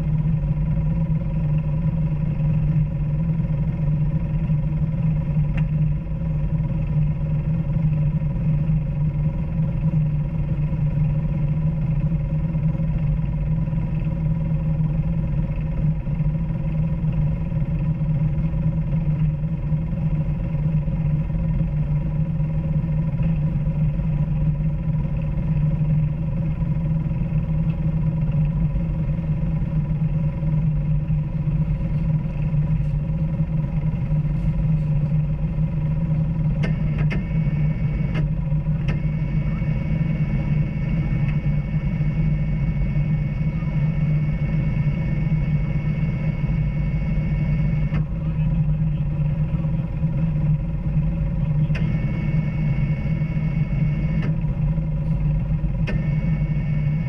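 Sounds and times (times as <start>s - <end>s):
off-road vehicle engine running: 0.0s - 57.0s
thin high whine: 28.1s - 57.0s.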